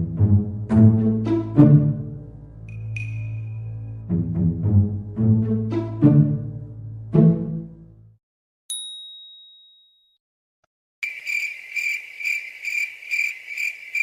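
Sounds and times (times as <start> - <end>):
bright bell ding: 2.7 - 3.6, 8.7 - 10.2.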